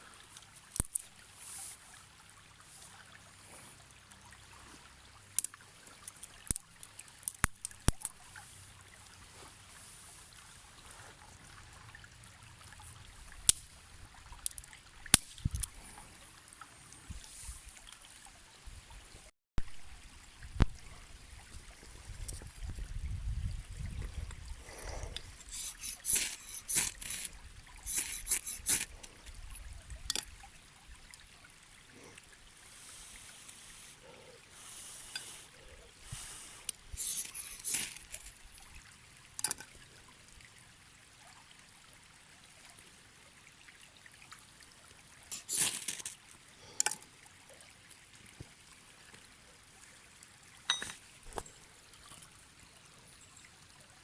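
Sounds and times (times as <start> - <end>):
stream trickling: 0.0 - 54.0.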